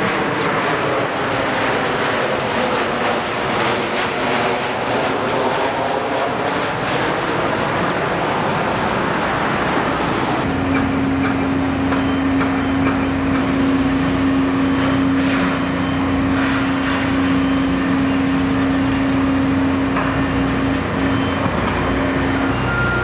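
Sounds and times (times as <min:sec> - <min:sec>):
steady rushing noise: 0:00.0 - 0:22.5
low machine hum: 0:09.2 - 0:23.0.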